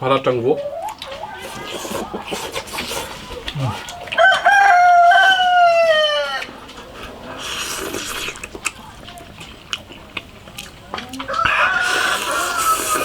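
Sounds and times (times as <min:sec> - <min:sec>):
rooster crowing: 0:03.2 - 0:06.6, 0:11.3 - 0:13.0.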